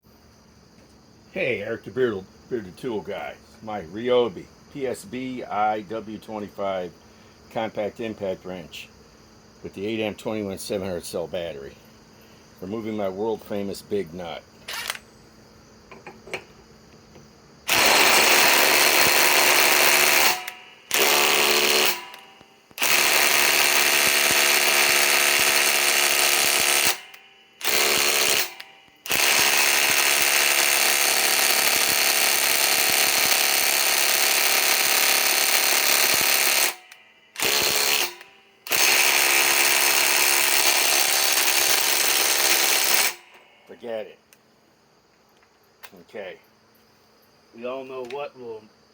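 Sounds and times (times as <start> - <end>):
impact wrench hammering: 17.7 - 43.4.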